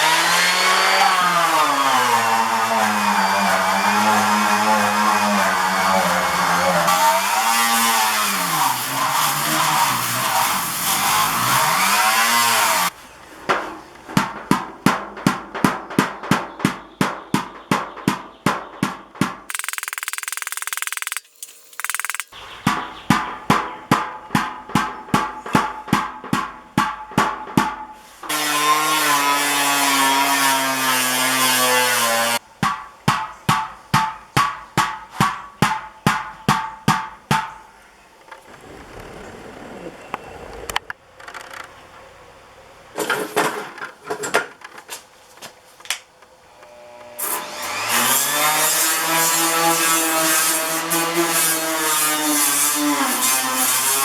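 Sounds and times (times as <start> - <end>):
power tool running: 19.5 - 22.4.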